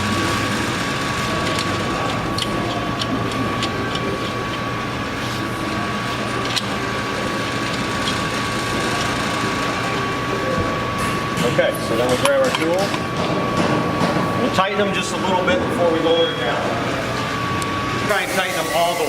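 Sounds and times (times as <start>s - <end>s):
mechanical hum with high whine: 0.0s - 19.0s.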